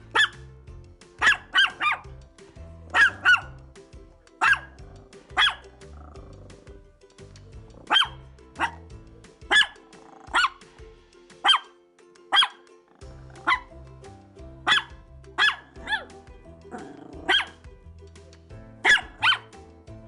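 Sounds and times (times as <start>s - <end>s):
background music with bass: 0.0s - 20.0s
dog barking: 0.1s - 0.4s, 1.2s - 2.1s, 2.9s - 3.6s, 4.4s - 6.1s, 7.8s - 8.9s, 9.5s - 10.6s, 11.4s - 11.7s, 12.3s - 12.7s, 13.3s - 13.7s, 14.6s - 16.1s, 16.8s - 17.6s, 18.8s - 19.6s.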